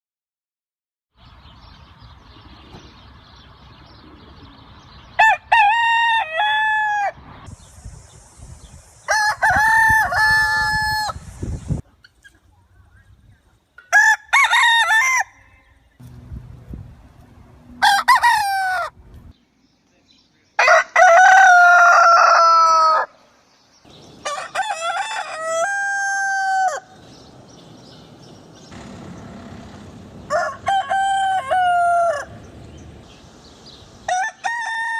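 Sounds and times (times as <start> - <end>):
roosters crowing: 5.1 - 7.3, 9.0 - 11.4, 13.8 - 15.9, 17.6 - 19.0, 20.6 - 23.3, 24.0 - 34.9.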